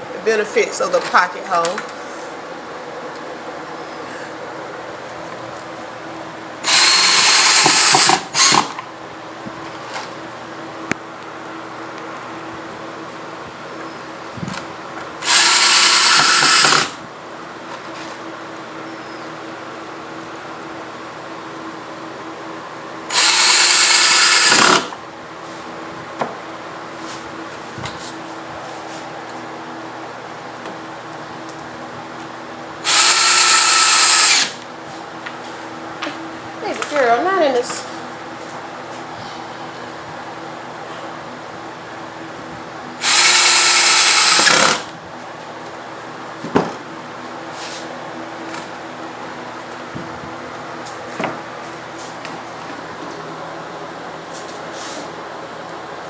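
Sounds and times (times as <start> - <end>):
power drill boring into wood: 6.6 - 8.8, 15.2 - 17.0, 23.1 - 25.0, 32.8 - 34.6, 43.0 - 44.9.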